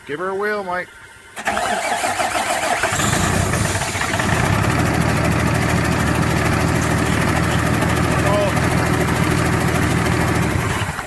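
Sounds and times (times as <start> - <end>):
diesel engine cranking on starter: 1.4 - 11.0
diesel engine running: 2.6 - 11.0.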